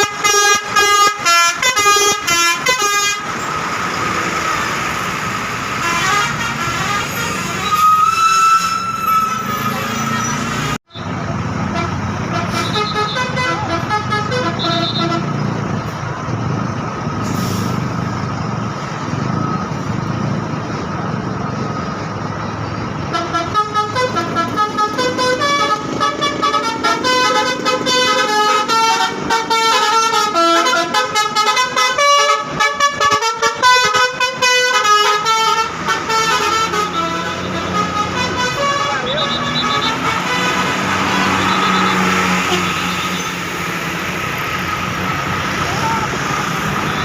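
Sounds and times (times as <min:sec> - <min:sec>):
bus air horns playing fast tune: 0:00.0 - 0:03.6, 0:05.7 - 0:11.0, 0:11.6 - 0:15.6, 0:23.0 - 0:43.7
bus engine running: 0:00.0 - 0:07.9, 0:08.9 - 0:47.0
held horn notes: 0:05.7 - 0:15.6, 0:23.0 - 0:43.9.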